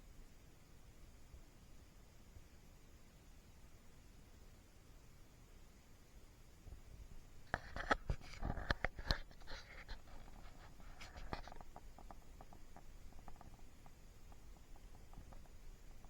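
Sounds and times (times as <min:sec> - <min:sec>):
scratches and sharp clicks: 0:07.5 - 0:16.0
small pet scrabbling: 0:07.5 - 0:16.0.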